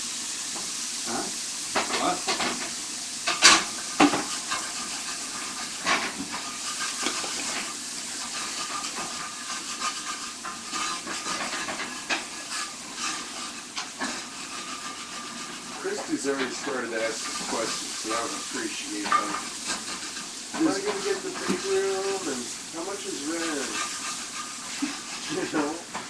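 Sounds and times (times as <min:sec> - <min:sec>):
food sizzling in a frying pan: 0:00.0 - 0:26.0.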